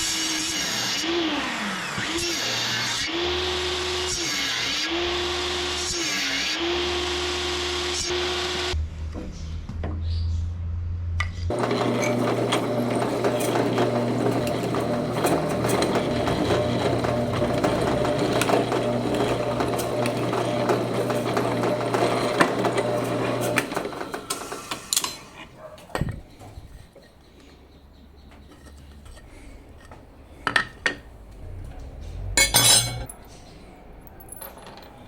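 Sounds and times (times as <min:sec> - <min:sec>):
power tool buzzing hum: 0:00.0 - 0:08.8, 0:11.5 - 0:25.1.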